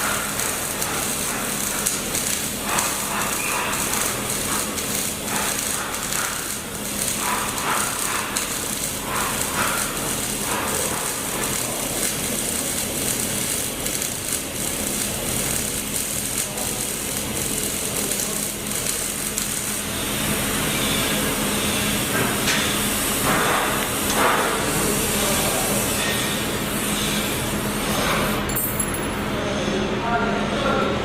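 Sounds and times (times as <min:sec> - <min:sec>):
welding arc crackling: 0:00.0 - 0:28.5.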